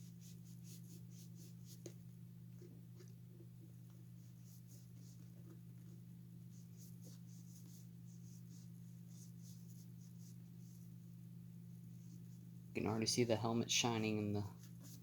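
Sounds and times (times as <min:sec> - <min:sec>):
scratchy rubbing on helmet: 0:00.0 - 0:11.0, 0:14.5 - 0:15.0
steady low hum: 0:00.0 - 0:15.0.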